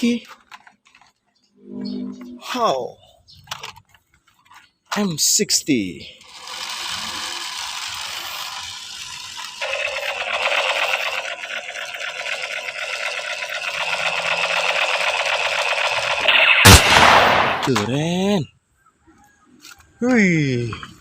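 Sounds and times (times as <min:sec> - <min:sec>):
fast mechanical rattle: 0:06.2 - 0:17.4.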